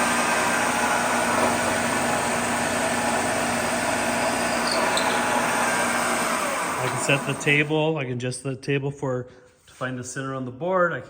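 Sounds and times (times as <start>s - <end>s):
machine motor running: 0.0s - 7.7s.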